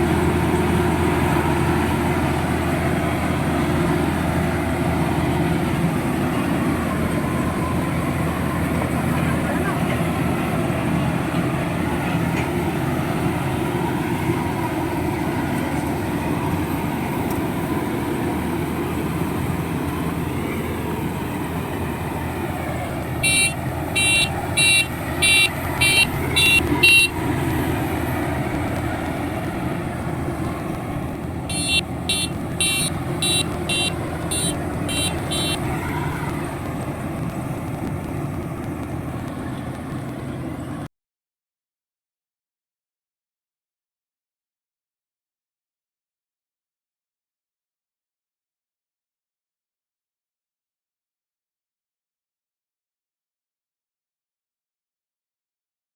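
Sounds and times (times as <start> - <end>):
diesel engine running: 0.0 - 40.9
rapid horn toots: 23.2 - 27.2, 31.5 - 36.4.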